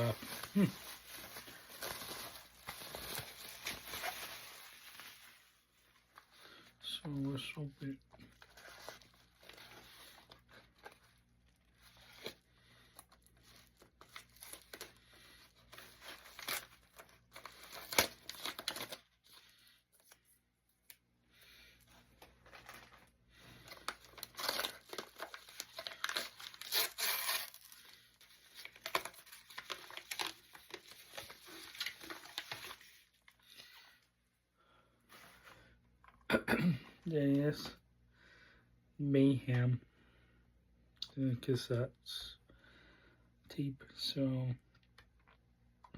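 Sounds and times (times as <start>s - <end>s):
packaging tearing and crinkling: 0.0s - 5.5s, 13.1s - 19.2s, 22.2s - 33.6s.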